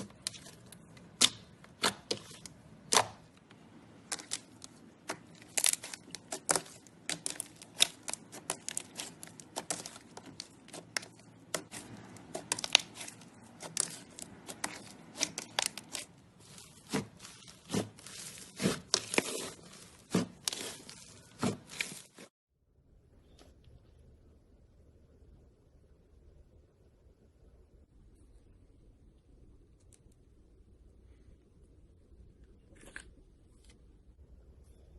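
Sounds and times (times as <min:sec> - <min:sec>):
slime crackling and popping: 0:04.0 - 0:22.3.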